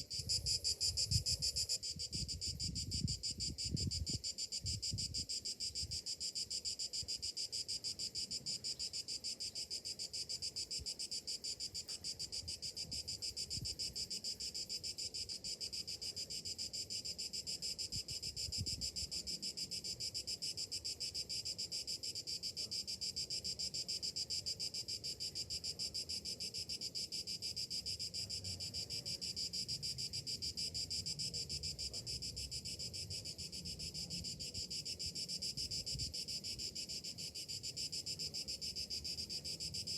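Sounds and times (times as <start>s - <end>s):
cicadas buzzing in chorus: 0.0s - 39.9s.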